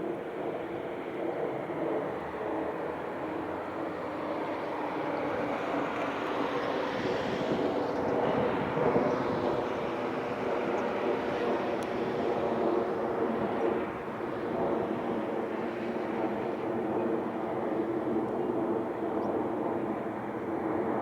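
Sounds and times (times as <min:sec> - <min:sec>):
aircraft engine drone: 0:00.0 - 0:21.0.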